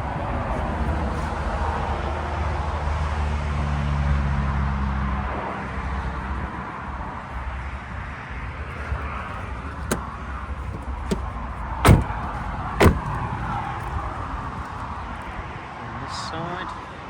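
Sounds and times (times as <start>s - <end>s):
door thumps: 9.8s - 13.3s.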